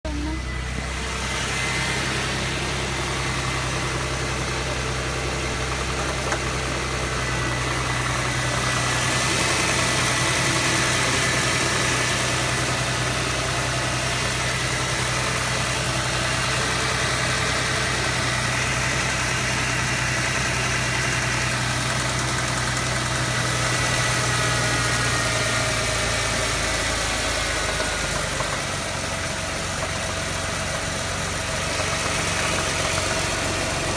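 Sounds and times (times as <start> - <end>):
car engine running: 0.0 - 33.9
engine ticking and knocking: 0.0 - 33.9.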